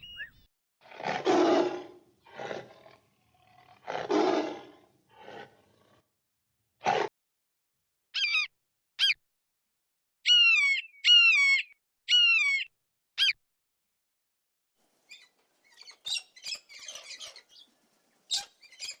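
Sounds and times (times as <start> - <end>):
bird calls: 0.0 - 0.5, 8.2 - 9.2, 10.3 - 13.4, 14.9 - 19.0.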